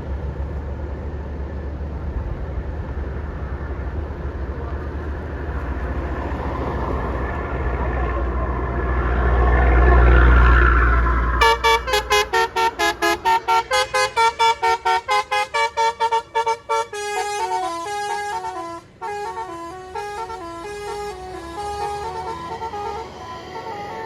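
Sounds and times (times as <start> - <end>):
bus engine rumbling: 0.0 - 24.0
multi-tone bus horn tune: 11.4 - 24.0.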